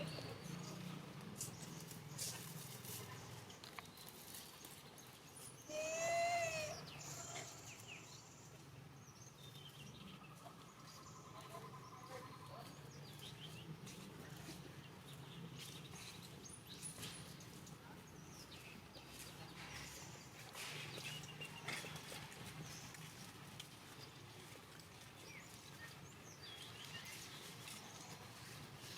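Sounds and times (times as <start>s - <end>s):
monkey call: 5.7s - 7.9s.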